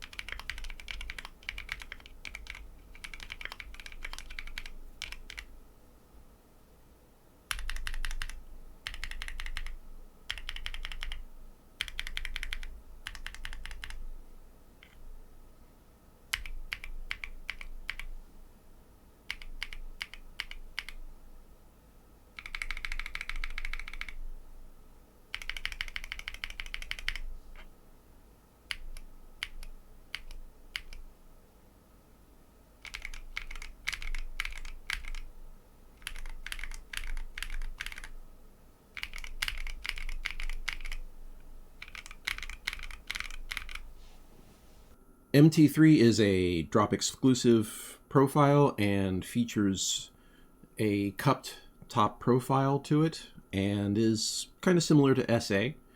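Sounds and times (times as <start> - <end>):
mechanical keyboard typing: 0.0 - 5.5, 7.5 - 11.2, 11.8 - 14.0, 16.3 - 18.1, 19.3 - 21.0, 22.4 - 24.2, 25.3 - 27.7, 28.7 - 31.0, 32.8 - 35.3, 36.0 - 38.2, 39.0 - 41.1, 41.8 - 43.9.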